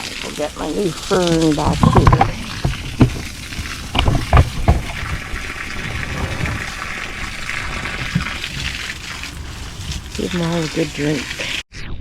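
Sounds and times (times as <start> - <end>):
water pouring onto plants: 0.0 - 11.6
sharp knocks: 1.7 - 8.8.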